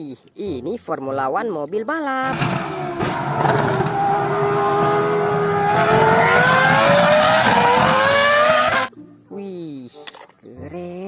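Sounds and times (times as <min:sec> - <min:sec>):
race car engine revving: 0:02.3 - 0:08.9.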